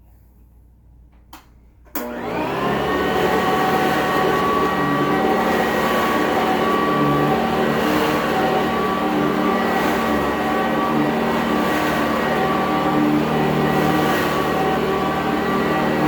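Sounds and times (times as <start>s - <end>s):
vacuum cleaner motor whine: 2.0s - 16.0s.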